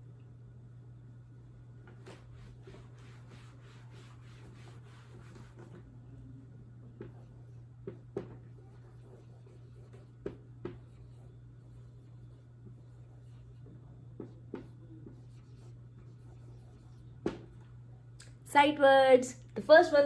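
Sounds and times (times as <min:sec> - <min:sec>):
pen taps and strokes: 0:07.0 - 0:11.2, 0:12.6 - 0:17.7.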